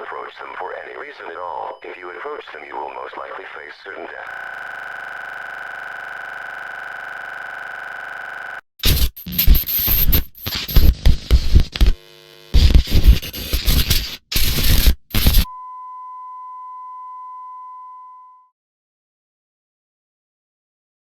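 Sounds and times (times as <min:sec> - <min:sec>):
harsh static bursts: 0:04.3 - 0:15.5.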